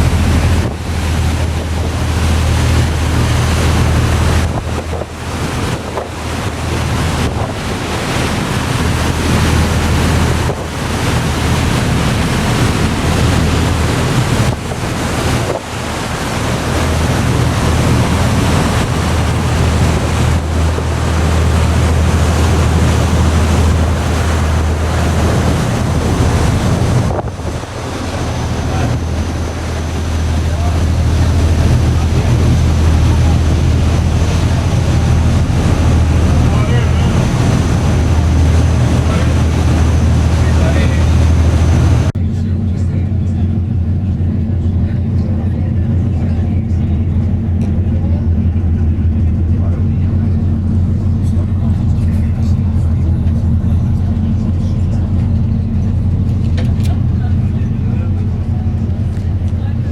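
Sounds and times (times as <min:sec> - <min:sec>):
wind buffeting microphone: 0:00.0 - 0:42.3
ferry engines droning: 0:00.0 - 0:59.9
rush of wind and water: 0:00.0 - 0:59.9.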